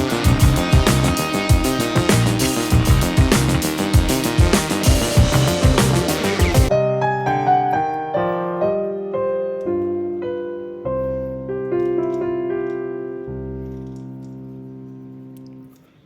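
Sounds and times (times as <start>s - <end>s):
electric piano playing slow notes: 0.0s - 16.0s.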